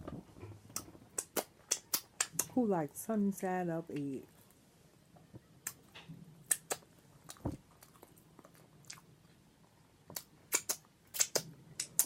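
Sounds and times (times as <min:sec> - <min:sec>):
person chewing food: 0:05.6 - 0:12.0.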